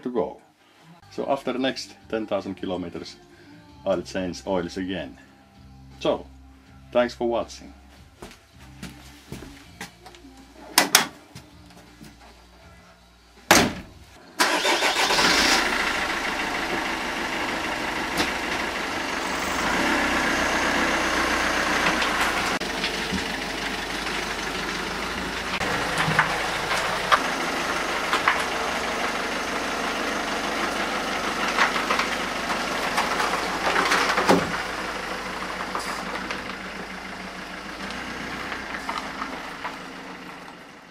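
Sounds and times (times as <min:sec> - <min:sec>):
diesel engine idling: 0:14.4 - 0:40.9.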